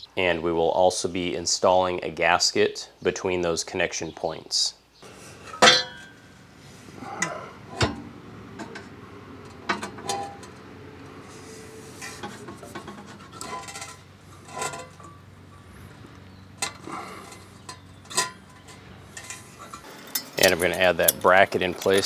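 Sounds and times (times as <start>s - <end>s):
metal pipe parts clinking and rattling: 13.4s - 15.1s, 19.2s - 22.0s.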